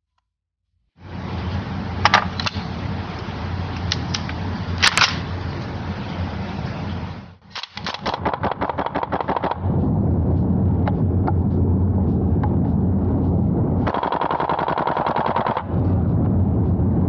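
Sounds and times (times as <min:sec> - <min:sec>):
steady low noise: 0:01.0 - 0:17.0
airsoft rifle automatic fire: 0:07.5 - 0:09.7, 0:13.9 - 0:15.7.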